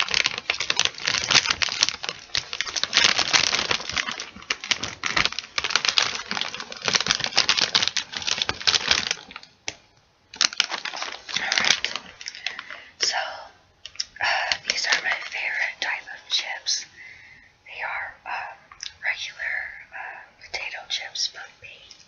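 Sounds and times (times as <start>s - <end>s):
chip bag crinkling: 0.0s - 17.1s.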